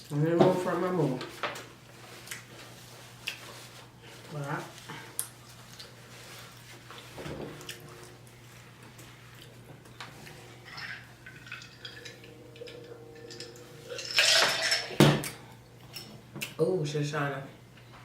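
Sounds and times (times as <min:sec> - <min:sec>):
low hum: 0:07.3 - 0:16.1
cutlery and dishes clinking: 0:10.6 - 0:16.1.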